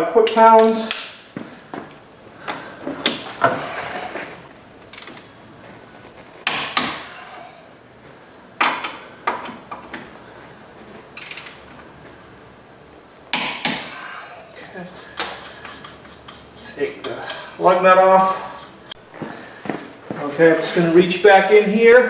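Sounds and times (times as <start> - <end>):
metal tools clicking and clanking: 0.2 - 1.2, 4.9 - 5.3, 11.2 - 11.7, 14.6 - 19.0.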